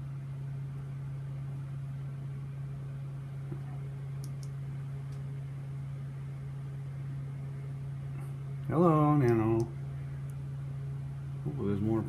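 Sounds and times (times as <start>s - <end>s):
low machine hum: 0.0s - 12.0s
faint short clicks: 4.2s - 5.2s.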